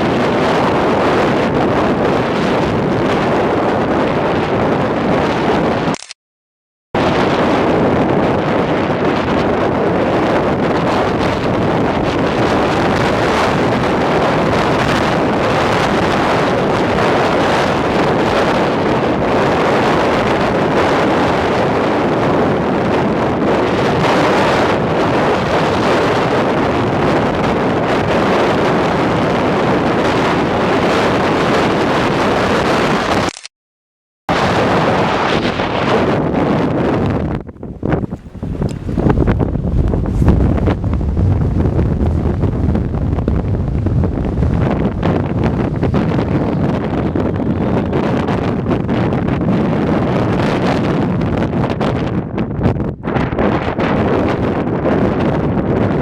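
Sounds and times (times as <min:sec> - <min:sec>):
strong wind on microphone: 0:00.0 - 0:06.2, 0:07.0 - 0:33.5, 0:34.3 - 0:56.0.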